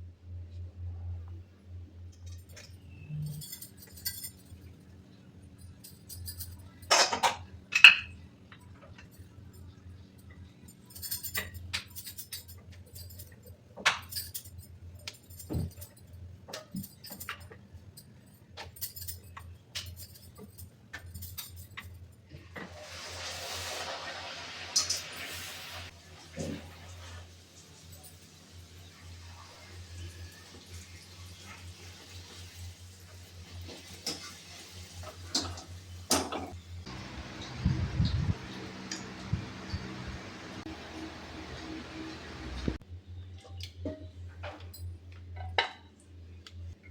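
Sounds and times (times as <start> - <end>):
utensils and dishes clinking: 2.2 - 4.8, 5.5 - 23.9, 24.6 - 42.8
steady low hum: 36.6 - 43.3.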